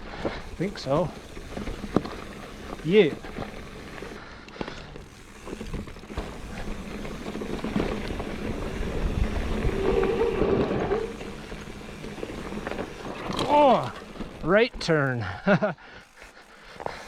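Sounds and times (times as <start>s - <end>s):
bike tyres on rocky trail: 0.0s - 17.0s
bike rattling and knocking: 0.1s - 15.0s
wind on microphone: 8.6s - 11.2s.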